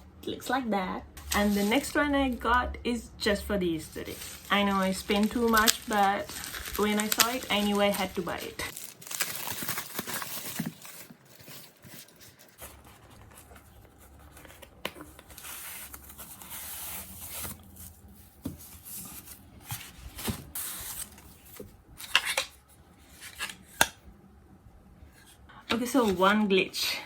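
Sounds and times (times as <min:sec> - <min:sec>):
packaging rustling: 0:03.9 - 0:23.6.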